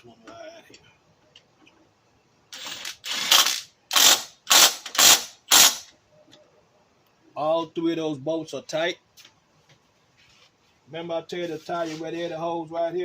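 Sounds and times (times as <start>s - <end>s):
ratchet wrench clicking: 2.6s - 5.9s.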